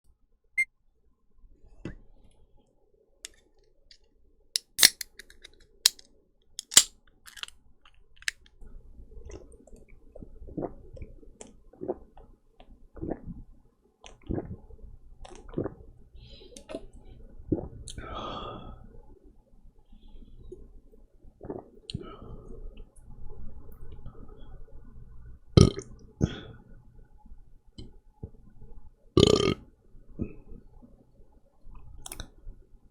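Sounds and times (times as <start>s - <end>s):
beer can clicks and cracks: 4.6s - 6.0s, 6.6s - 7.5s
person gulping beer: 13.0s - 13.4s, 14.0s - 14.6s, 21.4s - 22.0s, 29.2s - 29.6s.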